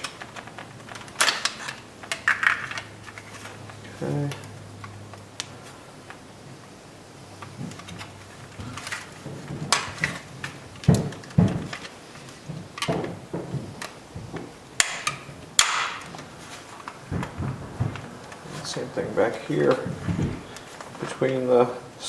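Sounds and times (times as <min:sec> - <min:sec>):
dull thuds: 0:06.6 - 0:21.3.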